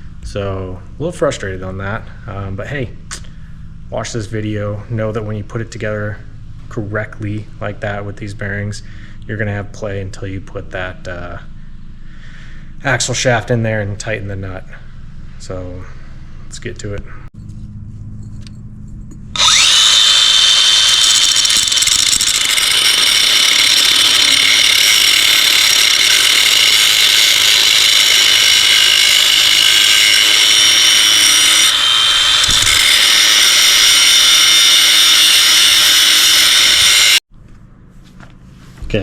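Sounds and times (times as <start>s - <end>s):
cutoff wheel grinding steel: 19.3s - 37.2s.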